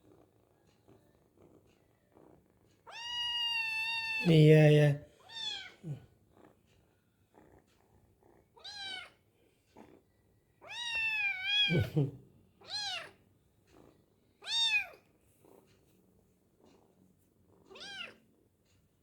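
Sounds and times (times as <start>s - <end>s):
kitten meowing: 2.9s - 4.4s, 5.2s - 5.9s, 8.6s - 9.2s, 10.6s - 12.0s, 12.6s - 13.2s, 14.4s - 15.0s, 17.7s - 18.2s.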